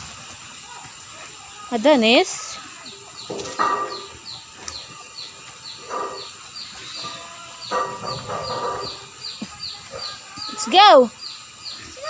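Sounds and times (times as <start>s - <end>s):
louder pitched animal calls: 5.2s - 12.0s.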